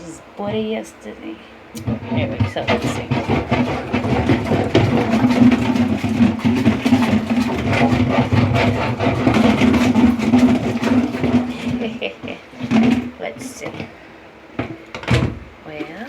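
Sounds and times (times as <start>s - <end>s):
washing machine motor hum: 0.0s - 16.0s
water sloshing and splashing: 1.8s - 14.0s.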